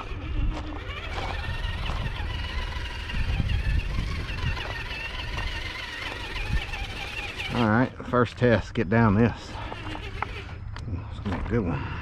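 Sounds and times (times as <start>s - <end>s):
wind rumble on microphone: 0.0s - 7.7s
rc car motor whining: 0.0s - 8.5s, 9.1s - 10.8s.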